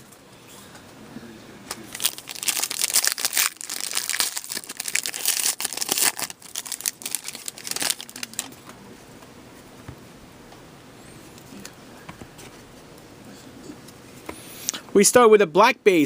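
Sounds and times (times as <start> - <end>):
plastic wrapping crinkling: 1.9 - 8.6.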